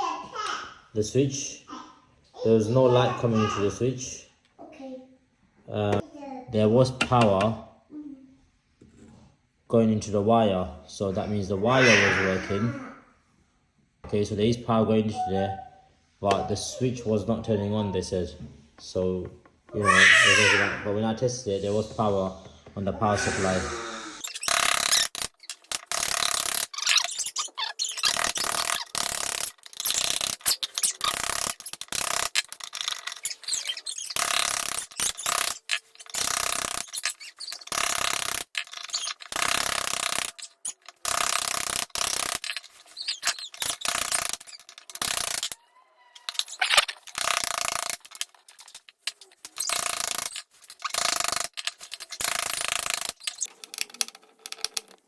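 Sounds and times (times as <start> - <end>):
hand tool scraping and ratcheting: 24.2 - 45.6, 46.2 - 55.0.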